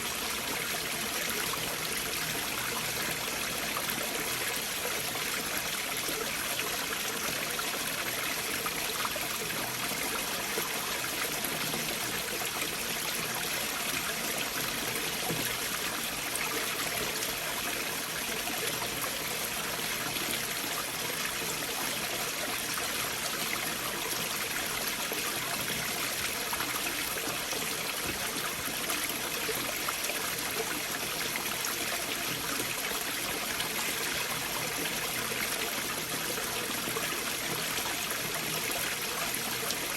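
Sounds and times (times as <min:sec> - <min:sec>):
stream water flowing over boulders: 0:00.0 - 0:39.9.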